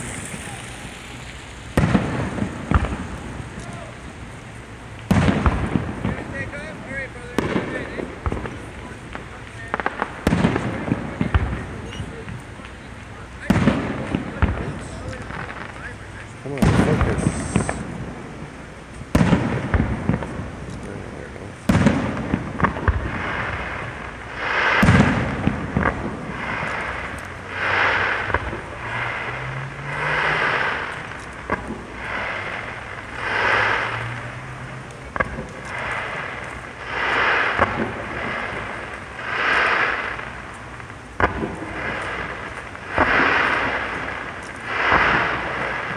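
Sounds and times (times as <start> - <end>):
firework pops: 0.0 - 45.9
firework shell bursts: 0.0 - 45.9
fireworks crackling: 0.0 - 45.9.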